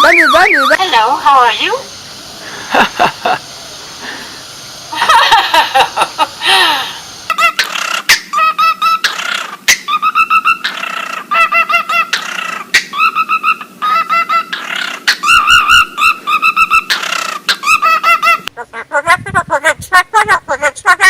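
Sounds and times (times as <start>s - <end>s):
parrot calling high notes: 0.0s - 1.9s, 7.3s - 19.1s
parrot harsh bursts: 0.0s - 18.5s.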